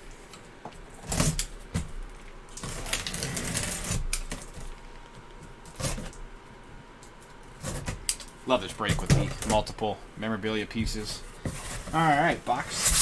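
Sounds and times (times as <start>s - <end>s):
cardboard scraping and rustling: 10.8s - 13.0s.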